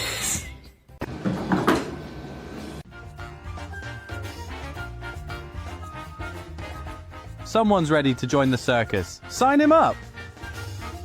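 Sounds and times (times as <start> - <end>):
upbeat playful music: 2.8 - 11.0.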